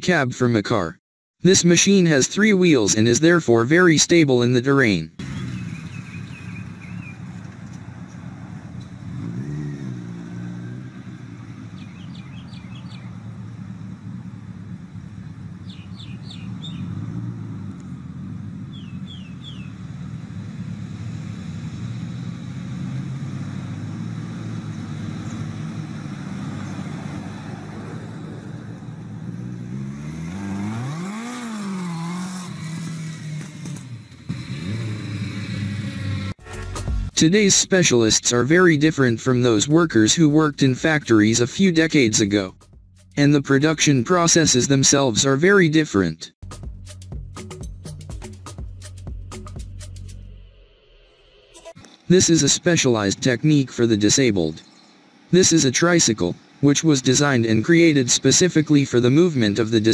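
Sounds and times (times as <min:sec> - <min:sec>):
motorcycle engine revving: 0:05.1 - 0:44.8, 0:51.0 - 0:59.9.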